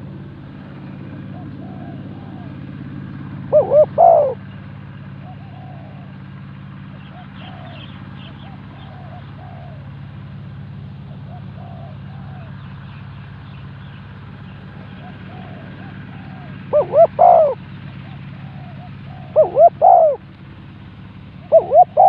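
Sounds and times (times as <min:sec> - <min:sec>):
doves cooing: 0:01.0 - 0:10.2, 0:11.1 - 0:12.8, 0:14.7 - 0:20.3, 0:21.3 - 0:22.0
small birds chirping: 0:03.5 - 0:06.1, 0:06.8 - 0:09.9, 0:11.0 - 0:20.2, 0:21.4 - 0:22.0.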